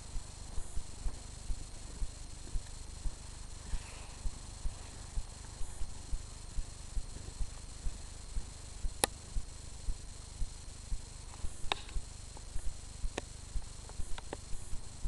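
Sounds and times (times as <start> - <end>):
sharp clicks: 8.9 - 9.2, 11.4 - 14.8.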